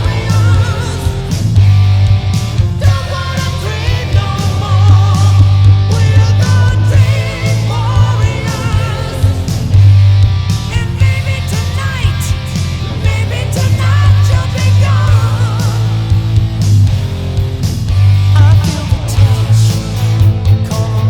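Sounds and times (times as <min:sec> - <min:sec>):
wavering vocal line: 0:00.0 - 0:01.6, 0:02.8 - 0:09.9, 0:12.9 - 0:16.0
loud rock music: 0:00.0 - 0:21.0.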